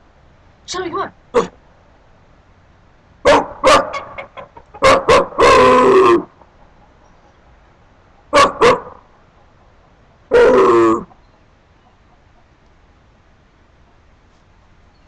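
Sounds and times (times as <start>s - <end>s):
dog barking: 3.2s - 5.6s, 8.3s - 9.0s
dog howling: 10.3s - 11.1s.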